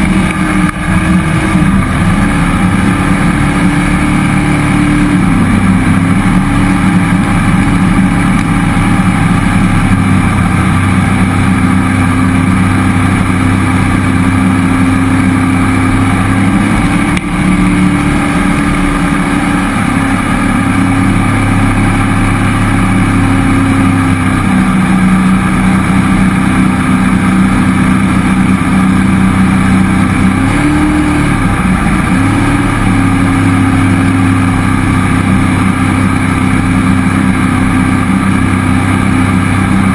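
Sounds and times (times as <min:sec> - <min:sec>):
boat engine running: 0:00.0 - 0:39.9.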